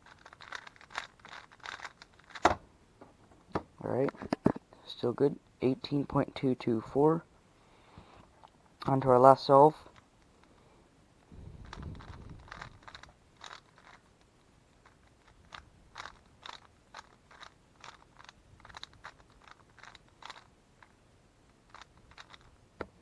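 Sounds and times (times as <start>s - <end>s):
puzzle cube plastic clicks: 0.0s - 2.6s, 11.6s - 14.2s, 14.8s - 22.9s.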